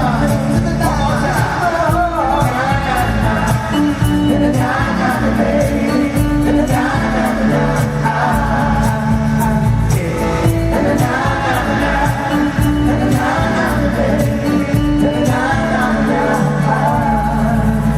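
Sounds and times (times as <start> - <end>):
steady drum beat: 0.0 - 17.8
live pop band playing: 0.0 - 17.9
sung vocal harmonies: 0.0 - 17.9.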